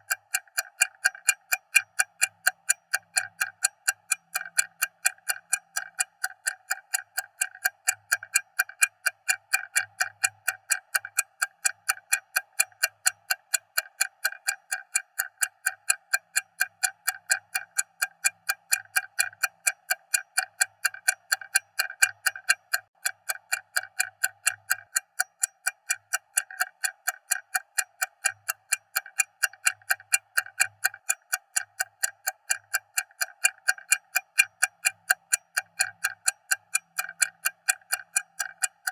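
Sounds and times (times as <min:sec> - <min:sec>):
stopwatch ticking: 0:00.0 - 0:38.9.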